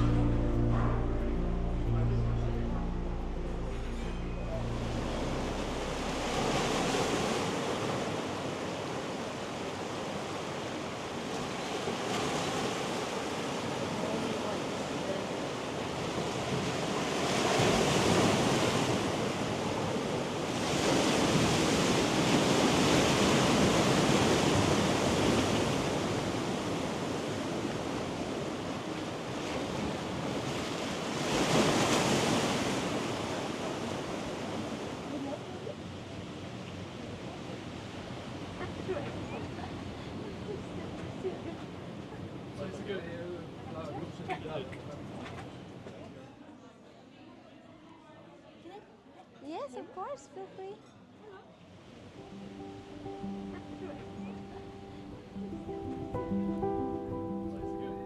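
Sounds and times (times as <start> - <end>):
sea waves breaking on shore: 0.0 - 44.5.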